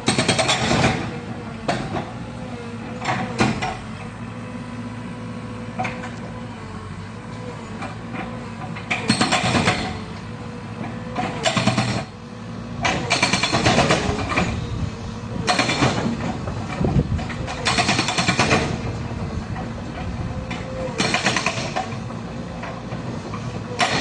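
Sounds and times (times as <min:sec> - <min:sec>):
hydraulic breaker hammering: 0:00.0 - 0:02.1, 0:11.2 - 0:12.2, 0:12.8 - 0:14.6, 0:15.4 - 0:19.0, 0:20.9 - 0:22.0, 0:23.8 - 0:24.0
excavator engine running: 0:00.0 - 0:24.0.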